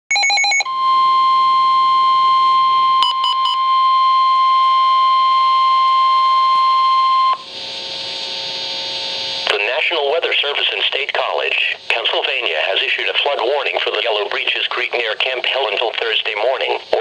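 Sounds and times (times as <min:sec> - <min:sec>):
chopped data tones: 0:00.1 - 0:07.5
steady warning alarm tone: 0:00.1 - 0:09.5.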